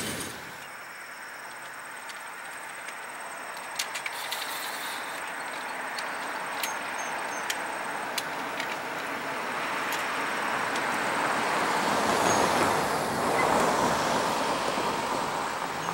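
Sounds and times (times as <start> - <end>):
freight train rumbling: 0.0 - 0.7.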